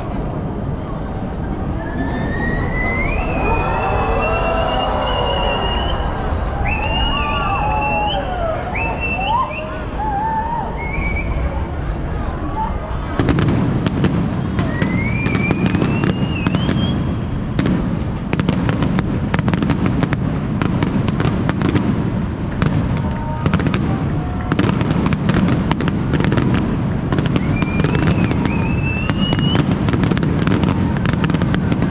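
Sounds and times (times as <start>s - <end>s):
continuous rumble: 0.0s - 31.9s
fireworks bangs and crackles: 0.0s - 31.9s
rising firework whistle: 1.6s - 11.7s, 14.3s - 17.7s, 27.1s - 31.9s.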